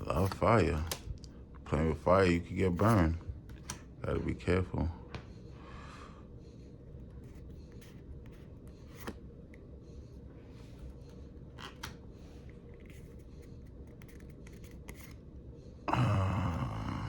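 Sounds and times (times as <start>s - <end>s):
low hum: 0.0s - 17.0s
trading cards clicking and rustling: 10.9s - 15.2s.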